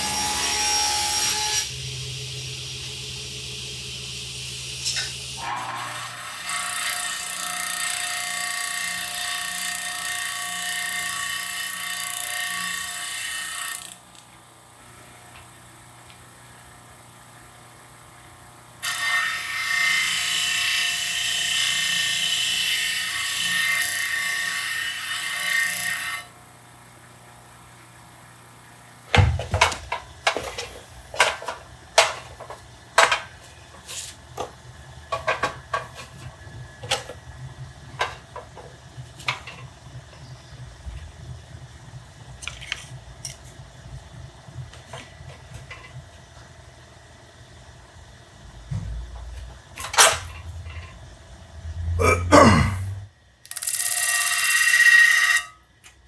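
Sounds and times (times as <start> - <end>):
power tool cutting wood: 0.0 - 1.8, 3.8 - 14.0, 18.8 - 26.3
low hum: 50.2 - 53.2.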